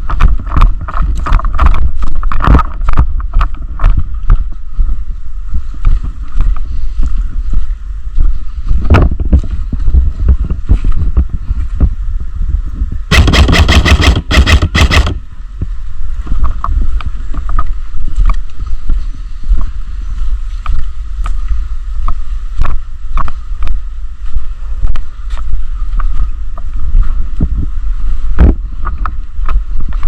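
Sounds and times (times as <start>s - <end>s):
airsoft gun rapid fire: 13.1s - 15.2s.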